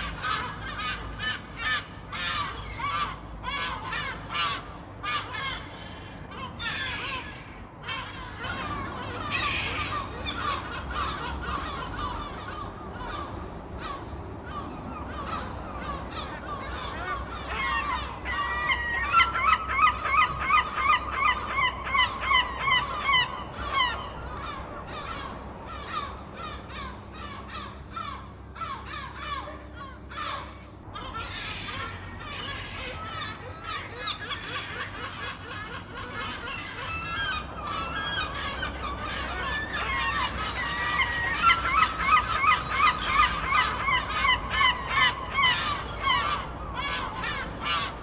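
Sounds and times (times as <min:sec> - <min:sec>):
gull rapid calls: 0:00.0 - 0:48.0
gulls squawking: 0:00.0 - 0:48.0.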